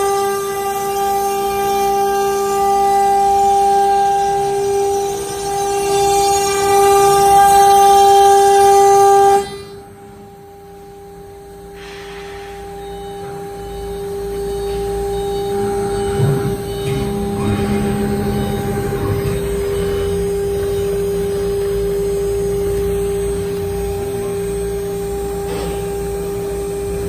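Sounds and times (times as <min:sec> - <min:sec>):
router spindle whine: 0:00.0 - 0:27.0
rushing noise: 0:11.7 - 0:13.2.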